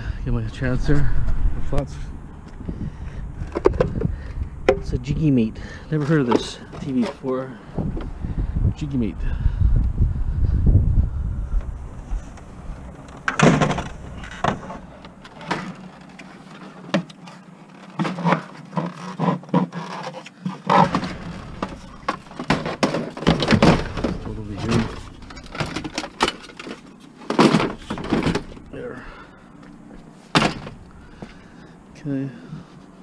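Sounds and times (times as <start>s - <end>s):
knocks clunks and clatters: 2.4s - 8.2s, 11.6s - 31.5s.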